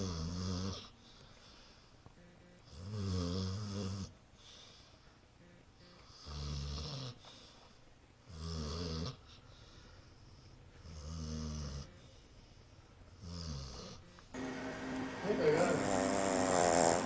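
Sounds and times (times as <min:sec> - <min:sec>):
dog snoring: 0:00.0 - 0:01.0, 0:02.6 - 0:04.2, 0:06.0 - 0:07.3, 0:08.2 - 0:09.4, 0:10.8 - 0:12.3, 0:13.1 - 0:14.2, 0:15.5 - 0:17.0.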